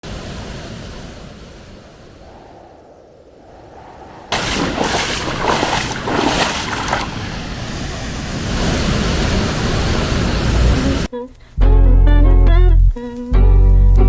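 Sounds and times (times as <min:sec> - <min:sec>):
rushing splashing water: 0:03.4 - 0:11.1.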